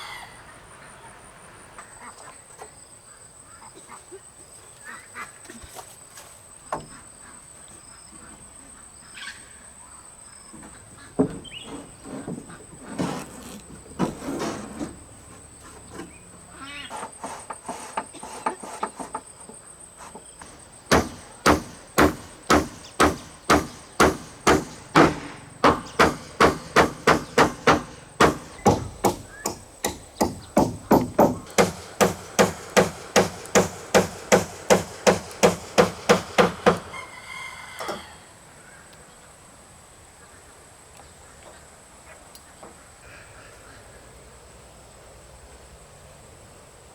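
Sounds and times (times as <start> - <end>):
hammer driving nails: 20.4 - 37.0.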